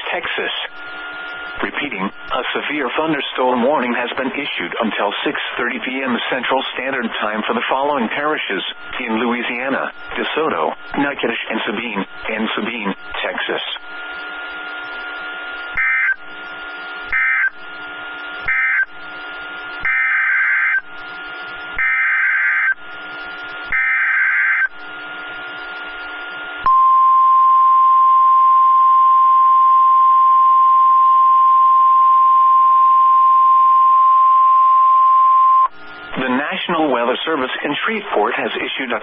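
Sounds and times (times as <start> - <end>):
steady warning alarm tone: 8.2 - 36.2.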